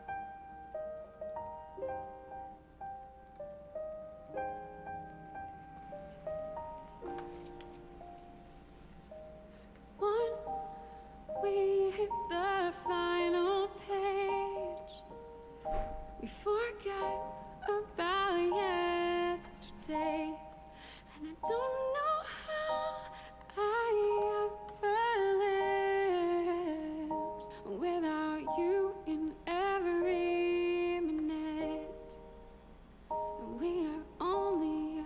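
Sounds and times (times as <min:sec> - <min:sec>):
wordless female vocal: 0:09.8 - 0:15.2, 0:16.1 - 0:32.2, 0:33.4 - 0:35.0.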